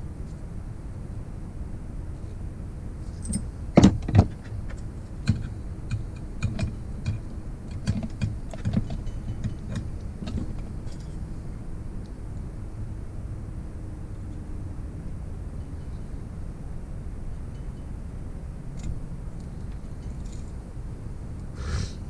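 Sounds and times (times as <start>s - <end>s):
metal tools clinking: 3.1s - 3.5s.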